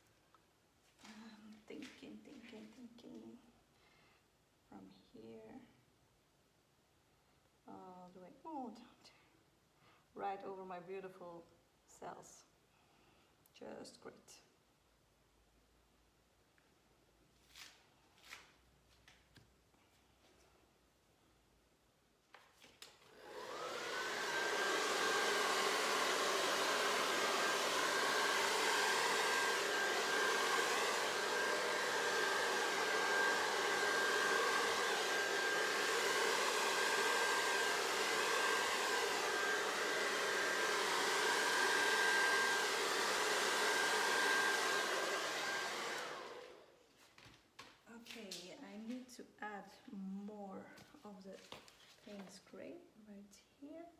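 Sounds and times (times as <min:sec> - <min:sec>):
hair dryer whine and rushing air: 0:23.0 - 0:46.8.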